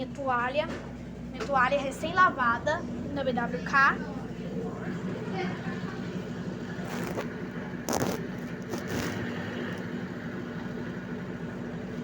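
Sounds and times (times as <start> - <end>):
washing machine humming: 0.0 - 12.0
knocks or scrapes: 7.9 - 9.3.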